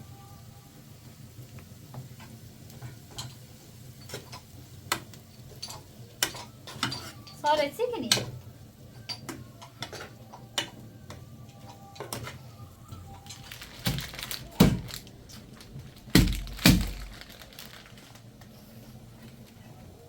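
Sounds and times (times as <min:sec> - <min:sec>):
dishes and utensils clattering: 0:02.2 - 0:04.5, 0:05.4 - 0:07.4, 0:09.0 - 0:10.8
heavy thuds: 0:15.9 - 0:17.4.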